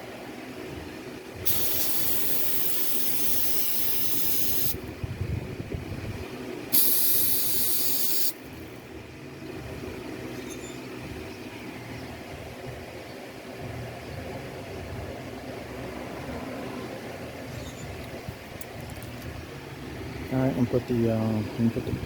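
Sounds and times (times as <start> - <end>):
aerosol can spraying: 1.4 - 4.8, 6.7 - 8.4.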